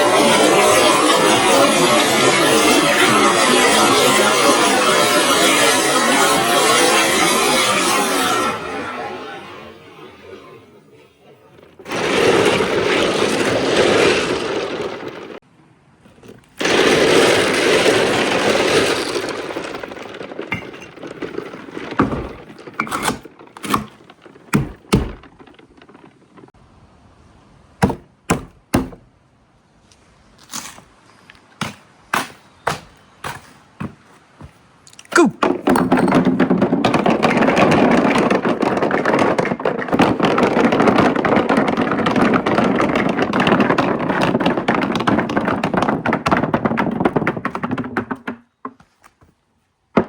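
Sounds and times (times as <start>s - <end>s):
marbles rolling on a track: 0.0s - 9.4s, 11.6s - 15.4s, 16.3s - 26.5s, 35.4s - 48.4s
marbles clicking on track pieces: 16.6s - 25.8s.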